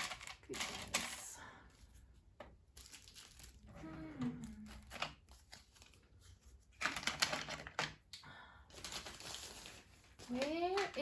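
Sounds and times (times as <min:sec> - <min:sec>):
person humming: 0:03.7 - 0:04.8.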